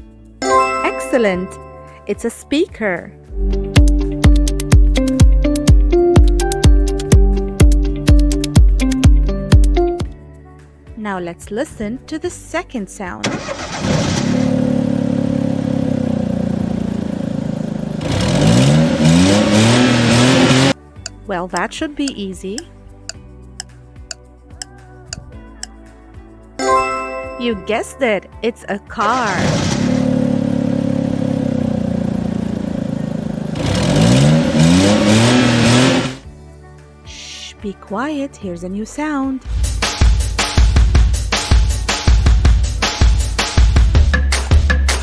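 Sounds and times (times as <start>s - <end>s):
car engine revving: 13.2s - 20.8s, 29.1s - 36.2s.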